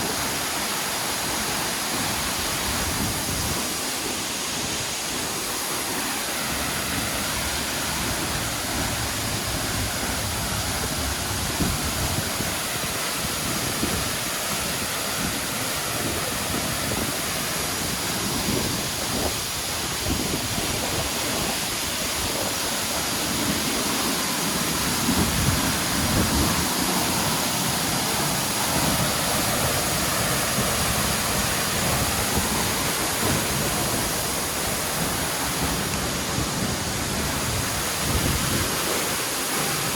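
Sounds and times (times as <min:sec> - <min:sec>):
waterfall rushing and splashing: 0:00.0 - 0:39.9.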